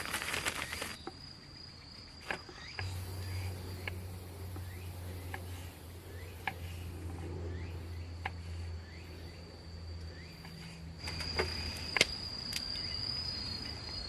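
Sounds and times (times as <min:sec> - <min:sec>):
cluster of clicks: 0:00.0 - 0:01.2, 0:10.4 - 0:12.9
insects trilling: 0:00.0 - 0:14.0
low steady hum: 0:01.0 - 0:14.0.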